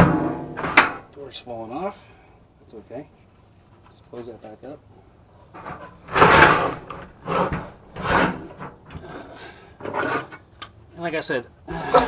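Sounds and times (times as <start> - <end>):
microwave oven scraping: 5.8 - 8.7.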